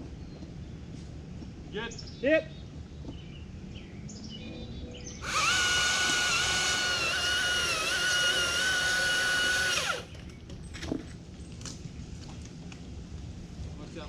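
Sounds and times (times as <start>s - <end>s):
chainsaw motor whine: 5.2s - 10.2s.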